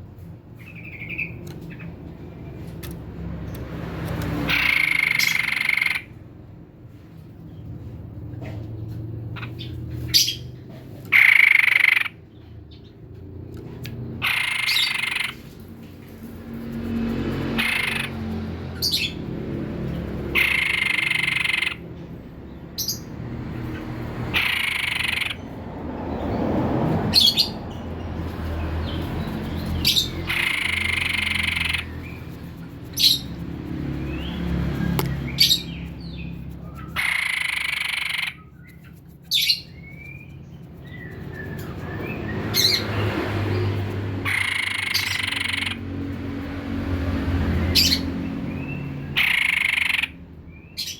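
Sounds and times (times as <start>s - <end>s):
bird calling harsh phrases: 4.5s - 6.1s, 11.1s - 12.2s, 14.2s - 15.5s, 17.5s - 19.2s, 20.3s - 21.8s, 24.3s - 25.6s, 29.0s - 33.4s, 35.3s - 40.3s, 44.2s - 45.8s, 49.2s - 50.2s.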